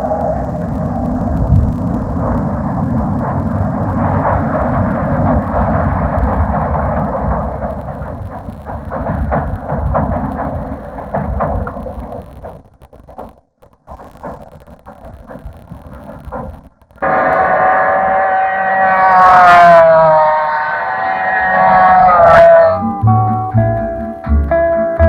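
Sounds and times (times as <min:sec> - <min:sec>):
muffled train rumble: 0:00.0 - 0:12.5, 0:16.3 - 0:25.0
clattering wheel knocks: 0:00.0 - 0:12.7.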